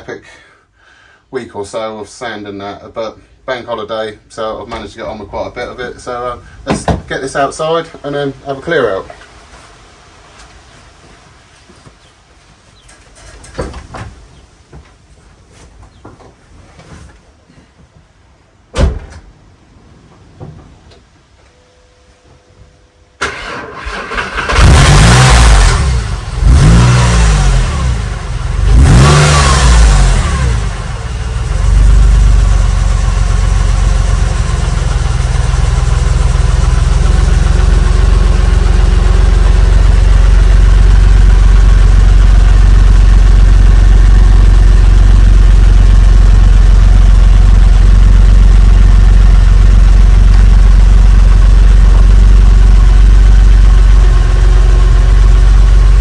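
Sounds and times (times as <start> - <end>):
car engine idling: 4.3 - 11.2, 23.2 - 56.0
car engine starting and revving: 23.2 - 56.0.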